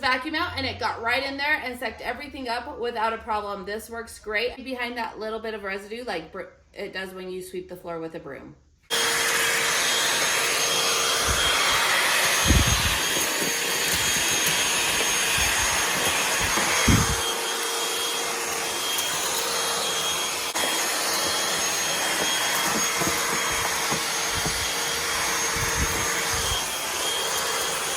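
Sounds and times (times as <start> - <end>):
handheld vacuum cleaner whine: 8.9 - 27.9.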